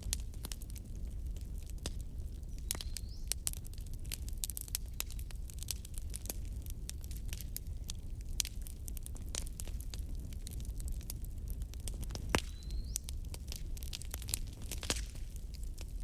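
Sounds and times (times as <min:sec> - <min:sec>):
low rumble of flames: 0:00.0 - 0:16.0
wood fire crackling and popping: 0:00.0 - 0:16.0.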